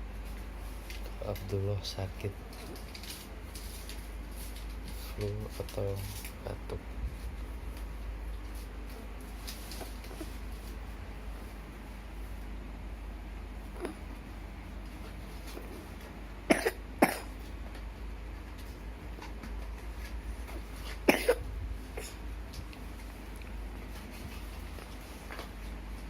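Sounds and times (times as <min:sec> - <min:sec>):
person coughing: 0:16.5 - 0:17.3, 0:21.0 - 0:22.2.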